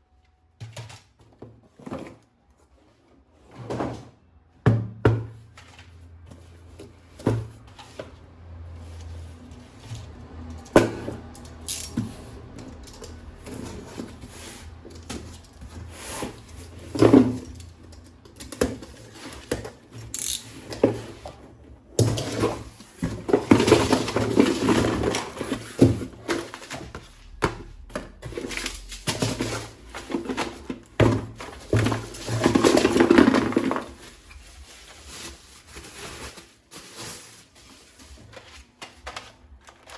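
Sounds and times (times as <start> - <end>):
packaging rustling: 22.0 - 39.9.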